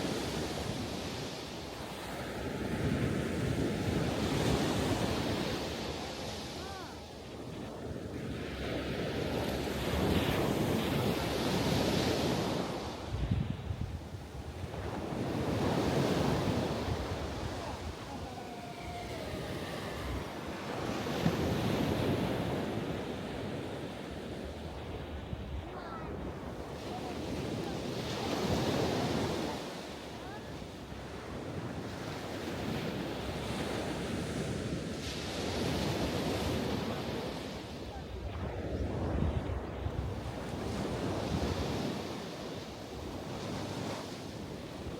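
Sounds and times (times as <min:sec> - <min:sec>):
ocean waves breaking on shore: 0:00.0 - 0:44.9
wind buffeting microphone: 0:02.0 - 0:29.7.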